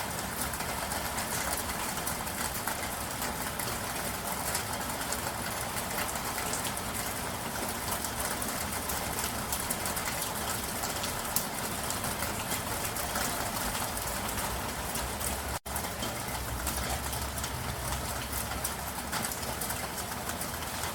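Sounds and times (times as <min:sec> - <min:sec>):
steady rain falling: 0:00.0 - 0:20.9.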